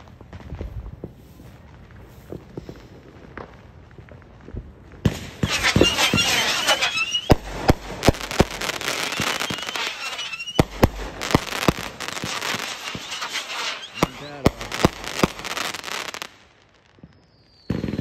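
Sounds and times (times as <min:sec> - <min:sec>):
fireworks bangs and crackling: 0:00.0 - 0:18.0
whistling fireworks: 0:05.0 - 0:18.0.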